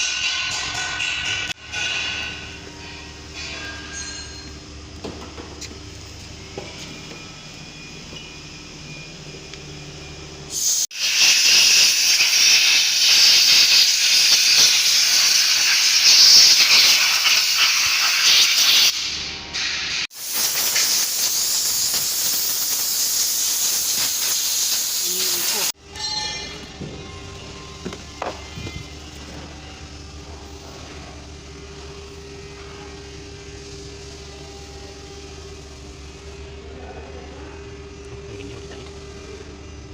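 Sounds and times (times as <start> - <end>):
hiss of air jet: 10.5 - 25.8
low background hum: 25.8 - 39.9
mechanical drone: 25.8 - 39.9.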